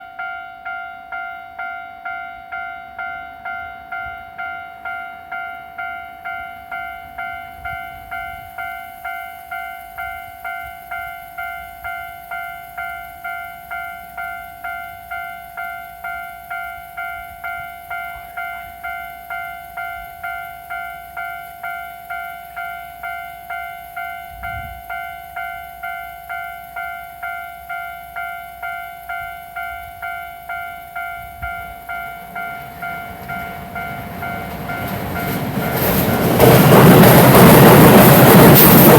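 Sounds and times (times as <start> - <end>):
level crossing bell clanging: 18.0 - 38.9.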